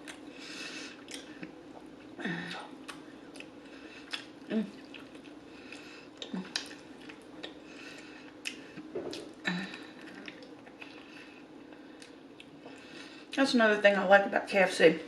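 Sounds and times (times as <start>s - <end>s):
faint steady hum: 0.0s - 15.0s
crunchy chewing: 2.8s - 12.9s.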